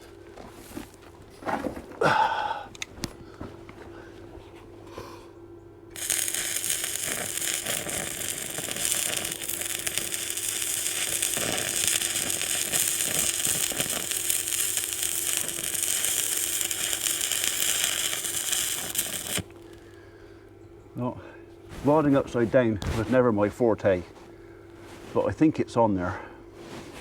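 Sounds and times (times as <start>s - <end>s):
arc welding crackle and sizzle: 5.9s - 20.0s
welder humming: 5.9s - 20.4s.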